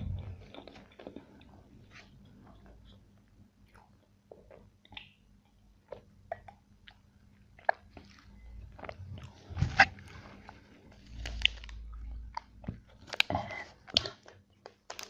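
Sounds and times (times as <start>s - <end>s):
chewing and mouth sounds: 0.0s - 1.5s, 5.9s - 15.0s.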